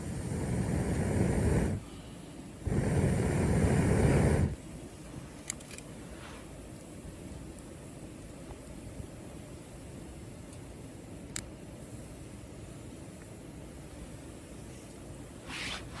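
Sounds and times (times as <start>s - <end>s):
air blowing onto fire: 0.0s - 4.7s, 13.6s - 16.0s
faint fire pops: 2.7s - 11.6s.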